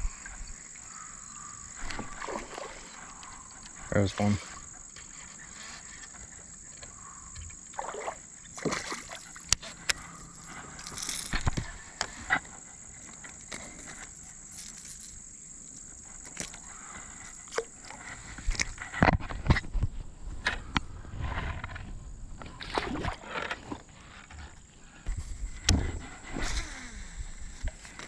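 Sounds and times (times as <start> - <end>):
water sloshing and splashing: 0.1 - 5.3, 6.0 - 13.4, 21.5 - 28.0.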